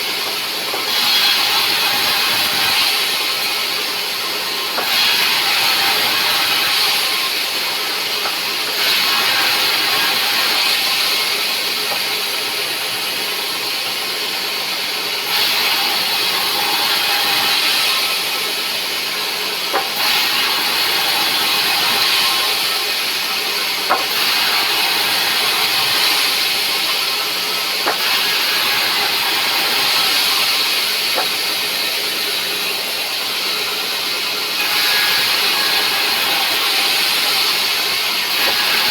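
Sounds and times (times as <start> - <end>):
saw cutting wood hissing: 0.1 - 13.2, 15.3 - 33.8, 34.6 - 38.9
sharp knocks: 23.9 - 24.1.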